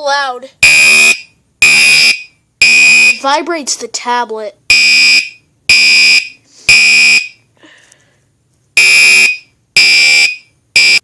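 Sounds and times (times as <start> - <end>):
fire alarm horn blasts: 0.6 - 3.2, 4.7 - 7.4, 8.8 - 11.0.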